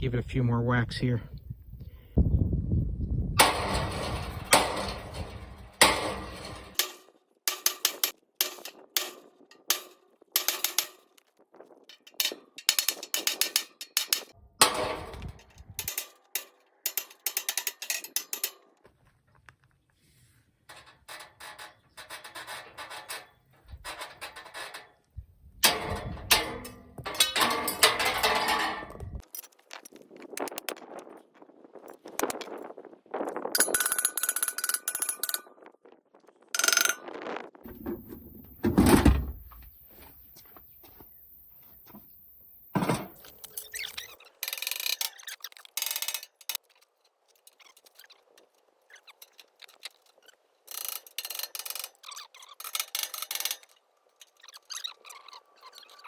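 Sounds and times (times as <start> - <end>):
sledgehammer clanging on metal gate: 3.4 - 11.1, 11.9 - 18.7, 20.7 - 25.0, 25.6 - 29.2, 37.7 - 39.7, 42.7 - 43.8.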